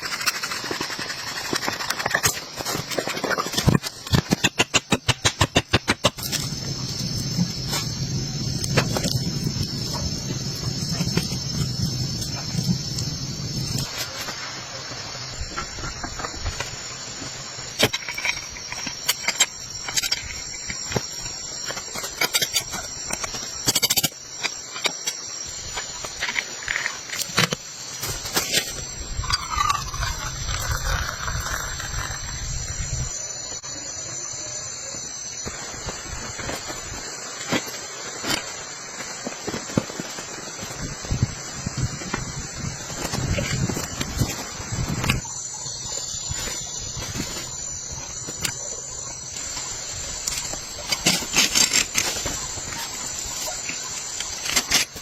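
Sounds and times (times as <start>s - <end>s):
insects chirring: 0.0s - 55.0s.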